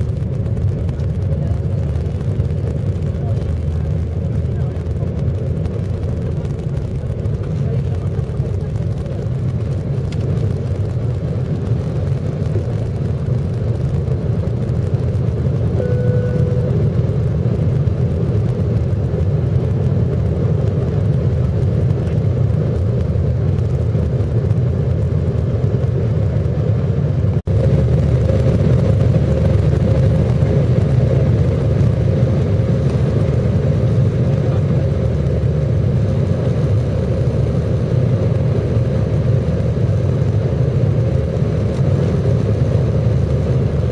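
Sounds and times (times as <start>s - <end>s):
engine whine: 0.0s - 43.9s
jet engine cabin rumble: 0.0s - 43.9s
brief tone: 15.7s - 17.0s.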